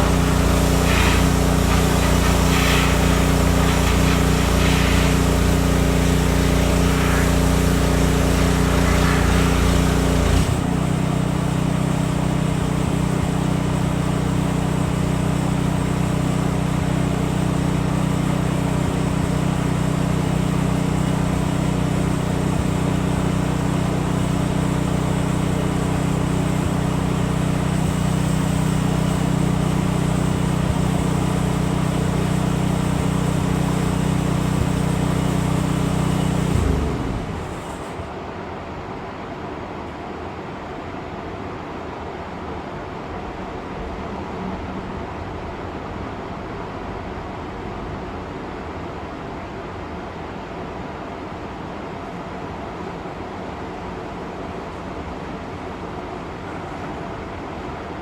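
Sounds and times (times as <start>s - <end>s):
motor hum: 0.0s - 13.9s, 29.8s - 38.1s.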